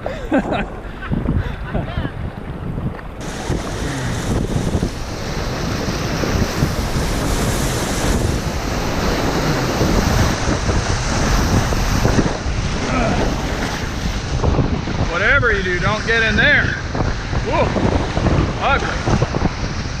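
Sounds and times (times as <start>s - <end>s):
wind buffeting microphone: 0.0s - 20.0s
river rapid roaring: 3.1s - 16.1s.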